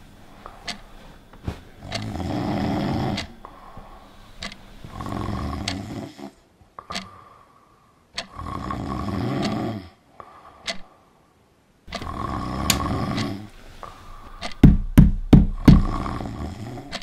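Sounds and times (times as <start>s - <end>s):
person snoring: 1.8s - 4.1s, 4.8s - 6.4s, 8.3s - 10.0s, 11.9s - 14.2s, 15.6s - 17.0s.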